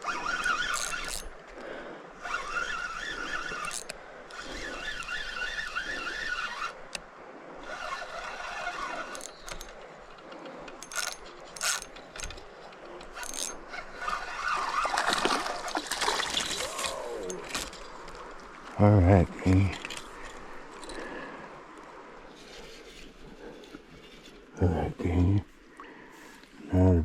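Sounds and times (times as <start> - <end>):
fishing reel whirring: 0.0 - 1.4, 2.2 - 7.0, 7.6 - 10.1, 10.7 - 18.2.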